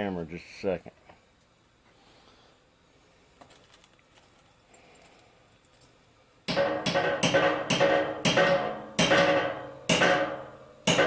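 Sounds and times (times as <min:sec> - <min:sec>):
metal tool knocking on metal: 0:06.5 - 0:11.0.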